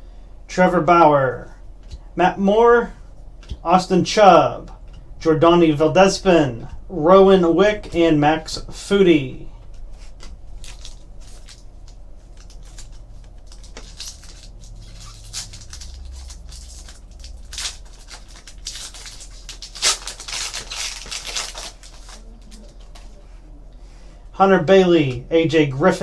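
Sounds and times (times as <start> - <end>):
foil card pack crinkling and tearing: 10.1 - 23.1.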